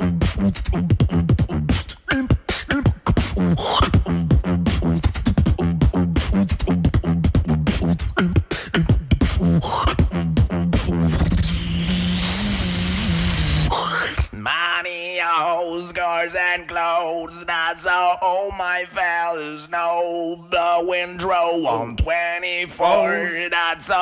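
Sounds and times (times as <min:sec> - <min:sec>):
beatboxing drum hits and clicks: 0:00.0 - 0:14.4.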